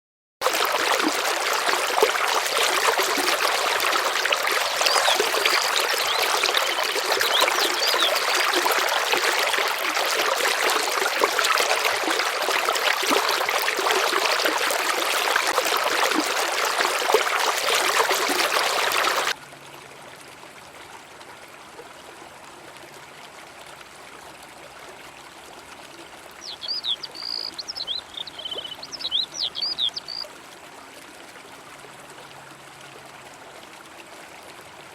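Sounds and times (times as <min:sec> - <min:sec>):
river water rushing and splashing: 0:00.4 - 0:19.4
small bird chirping: 0:26.4 - 0:30.2.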